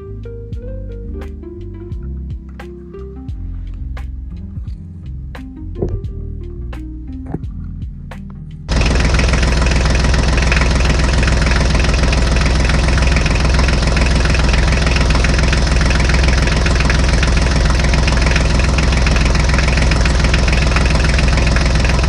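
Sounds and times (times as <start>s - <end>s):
tractor engine idling: 8.7s - 22.0s.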